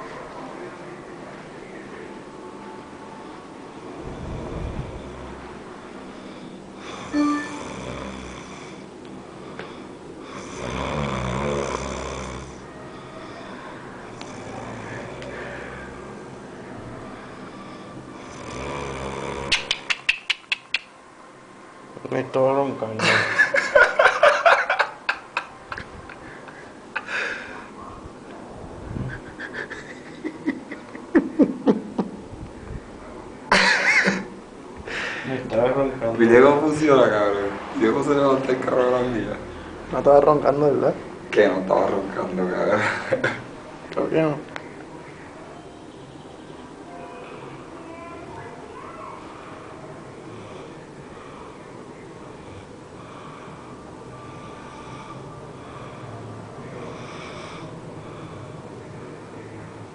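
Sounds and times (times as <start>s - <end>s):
man snoring heavily: 6.8s - 8.8s, 10.2s - 12.6s, 14.2s - 15.2s, 17.4s - 19.5s, 52.3s - 58.5s.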